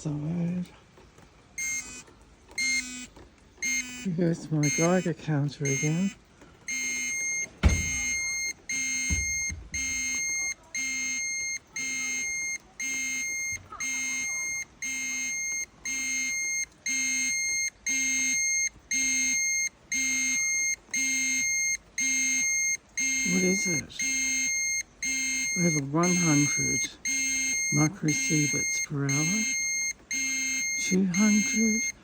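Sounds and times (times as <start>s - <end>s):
geiger counter alarm beeping: 1.6s - 2.0s, 2.6s - 32.0s
low thumps: 7.6s - 8.3s, 9.0s - 10.0s.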